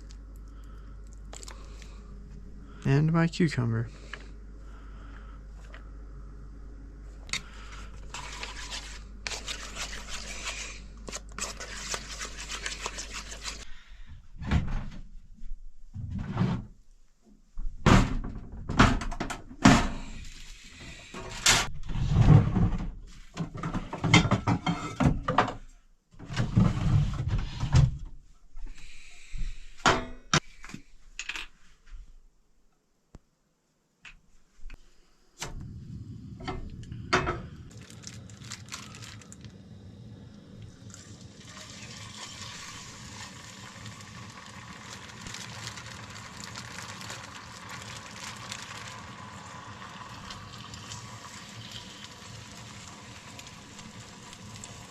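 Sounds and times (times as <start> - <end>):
low hum: 0.0 - 11.4, 34.7 - 41.4
fast continuous scraping: 8.1 - 13.7.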